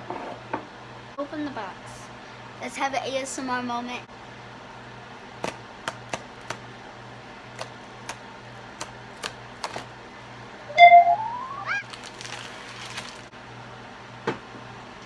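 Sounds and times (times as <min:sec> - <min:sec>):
rising high tone: 0:10.7 - 0:11.8.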